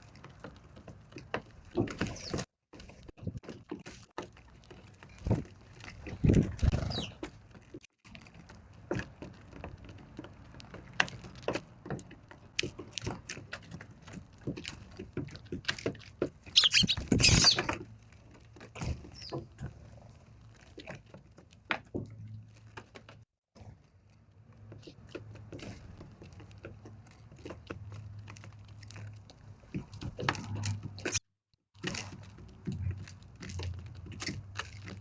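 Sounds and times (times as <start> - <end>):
birds pecking at cake: 0.0 - 21.6
high bird chirps: 6.9 - 7.2, 16.5 - 17.7.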